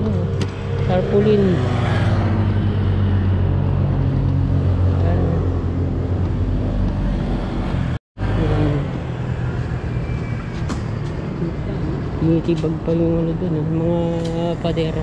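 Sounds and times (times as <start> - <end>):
street traffic: 0.0 - 15.0.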